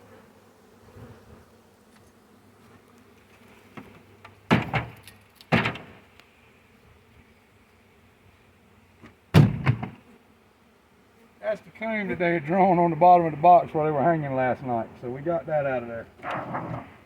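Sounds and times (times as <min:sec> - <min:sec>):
bee swarm buzzing: 0:00.0 - 0:04.7, 0:05.6 - 0:17.0
sharp knocks: 0:04.5 - 0:06.0, 0:09.4 - 0:10.0.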